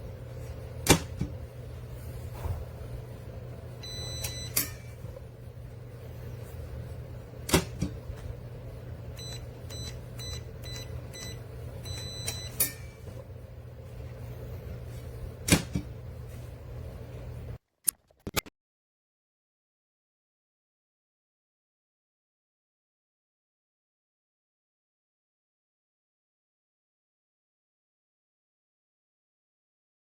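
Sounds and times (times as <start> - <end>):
steady low hum: 0.0 - 17.6
metal safe clunks: 0.8 - 1.4, 7.5 - 8.0
electronic keypad beeping: 3.8 - 4.9, 9.2 - 12.7.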